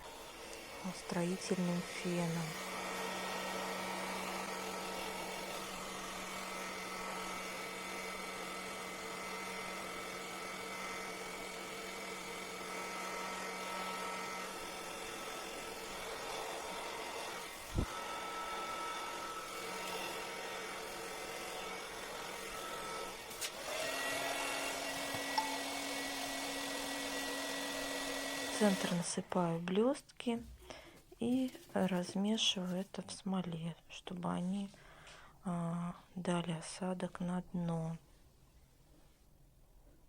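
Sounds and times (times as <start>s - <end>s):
heat gun fan blowing: 0.0s - 28.9s.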